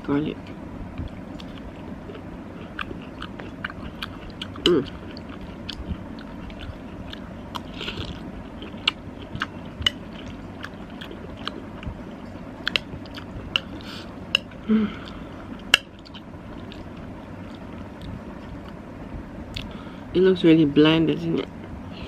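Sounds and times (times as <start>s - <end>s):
person chewing soft food: 0.9s - 18.8s, 19.5s - 19.9s
person humming: 4.6s - 5.0s, 14.6s - 15.2s.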